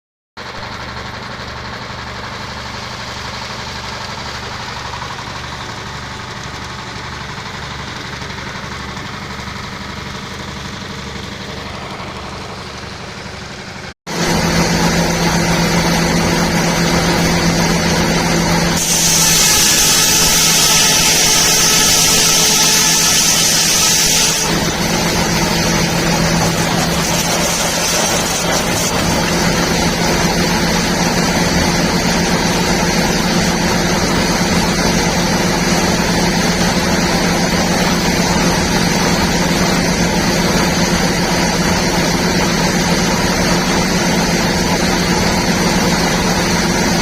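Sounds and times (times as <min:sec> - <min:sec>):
diesel engine running: 0:00.4 - 0:47.0
high-pitched whine: 0:11.8 - 0:47.0.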